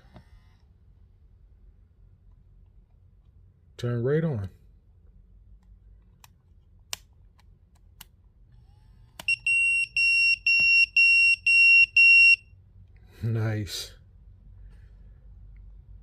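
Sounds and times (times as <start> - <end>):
pager beeping: 9.3 - 12.4.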